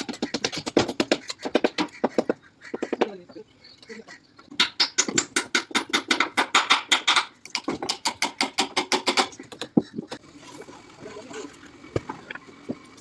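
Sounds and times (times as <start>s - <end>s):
rapid sharp taps: 0.0s - 3.1s.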